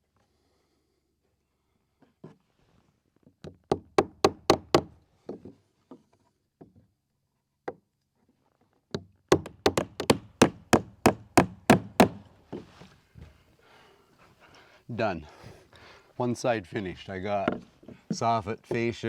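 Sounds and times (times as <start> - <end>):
hammer driving nails into wood: 3.7 - 4.9, 9.3 - 12.3.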